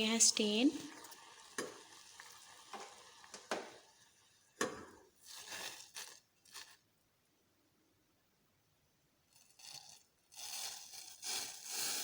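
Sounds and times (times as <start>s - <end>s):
liquid pouring: 0.0s - 6.8s.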